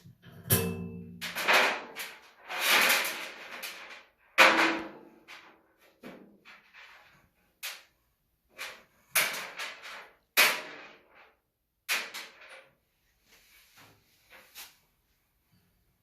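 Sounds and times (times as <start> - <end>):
metallic clanks and knocks: 0.1 - 2.0.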